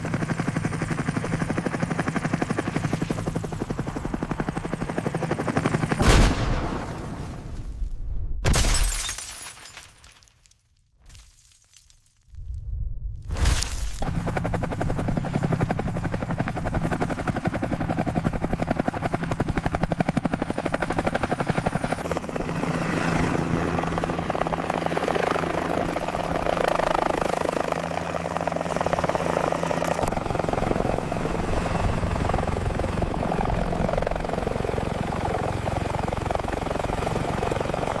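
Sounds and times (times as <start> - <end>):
helicopter rotor blades beating: 0.0 - 6.0, 14.0 - 38.0.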